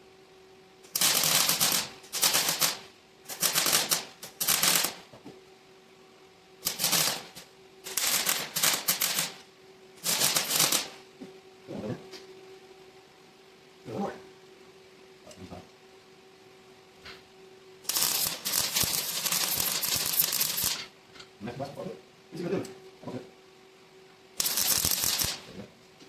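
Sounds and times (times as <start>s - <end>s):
steady hum: 0.0s - 26.0s
welding crackle: 0.9s - 5.1s, 6.6s - 11.0s, 17.8s - 20.9s, 24.4s - 25.6s.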